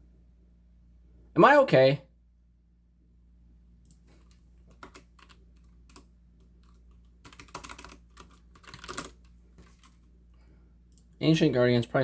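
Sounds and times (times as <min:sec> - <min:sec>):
typing on computer keyboard: 0:03.9 - 0:10.1.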